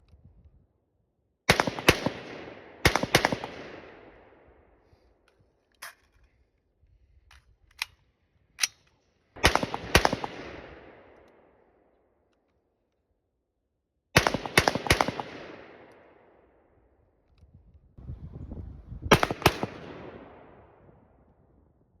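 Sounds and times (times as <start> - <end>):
rifle shots with rolling echo: 1.4 - 5.2, 8.6 - 12.3, 14.2 - 17.1, 19.1 - 21.4.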